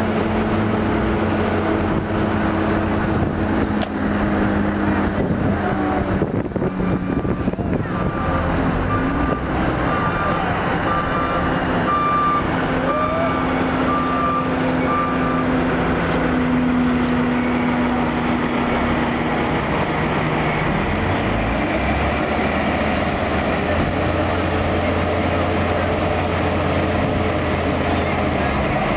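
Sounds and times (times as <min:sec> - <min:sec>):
truck engine running: 0:00.0 - 0:28.9
reversing alarm beeping: 0:06.9 - 0:15.7.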